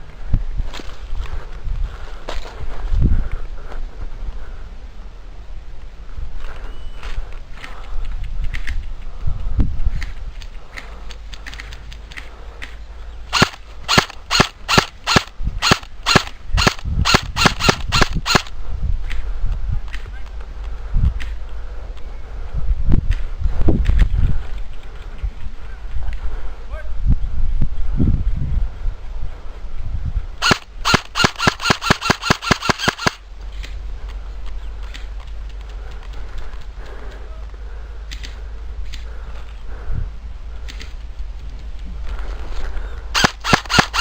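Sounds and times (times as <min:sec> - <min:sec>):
airsoft gun shots: 0:13.3 - 0:18.5, 0:30.4 - 0:33.2, 0:43.2 - 0:44.0.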